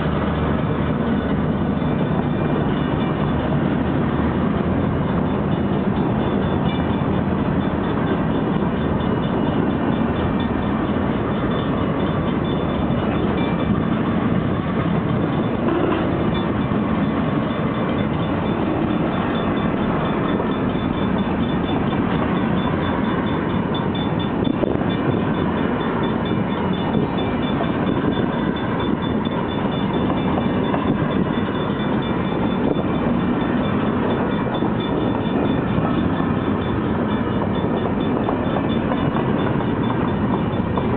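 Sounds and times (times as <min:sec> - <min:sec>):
freight train rumbling on rails: 0:00.0 - 0:40.9
faint bell ringing: 0:01.1 - 0:03.7, 0:04.7 - 0:40.9.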